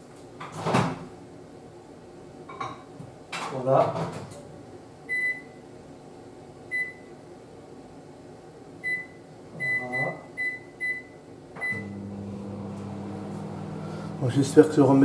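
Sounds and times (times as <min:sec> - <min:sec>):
microwave oven humming: 0:04.8 - 0:15.0
microwave keypad beeping: 0:08.8 - 0:12.0.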